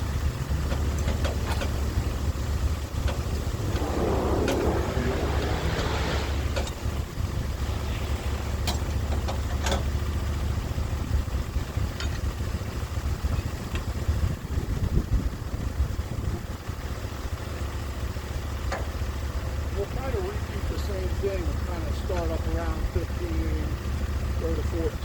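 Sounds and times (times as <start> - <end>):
sawmill engine humming: 0.0 - 13.7, 18.9 - 25.0.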